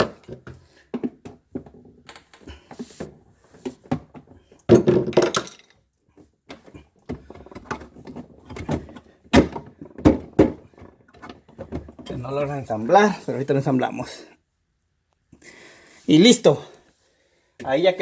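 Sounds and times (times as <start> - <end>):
plastic parts knocking and scraping: 0.0 - 12.6.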